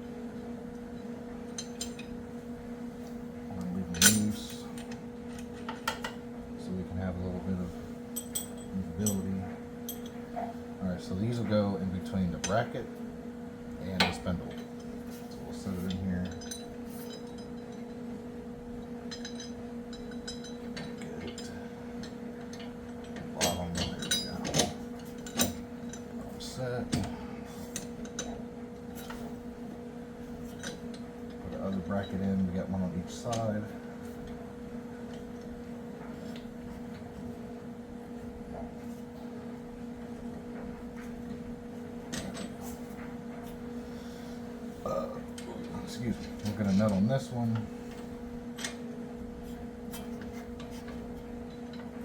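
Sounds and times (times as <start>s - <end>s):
steady electrical hum: 0.0s - 52.0s
metal spacers clinking: 3.8s - 5.0s, 8.2s - 10.2s, 19.1s - 27.1s.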